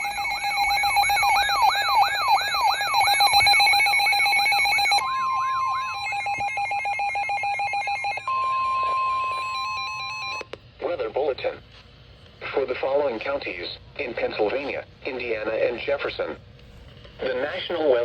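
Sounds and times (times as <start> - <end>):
electronic alarm tones with falling sweeps: 0.0 - 10.4
long steady alert tone: 0.0 - 10.5.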